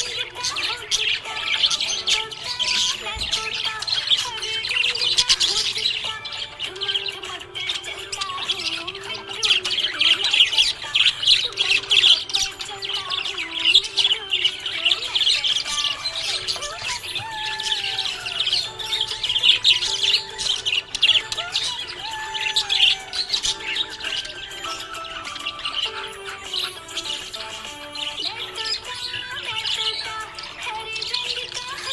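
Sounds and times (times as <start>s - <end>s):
budgerigars chirping and warbling: 0.0s - 31.9s
slow background music: 0.0s - 31.9s.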